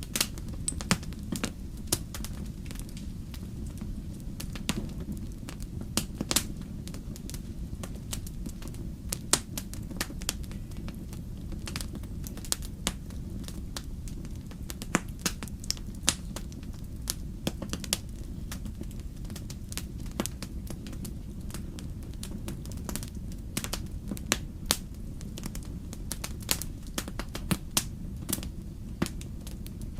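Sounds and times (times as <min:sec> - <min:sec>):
wood fire crackling and popping: 0:00.0 - 0:29.9.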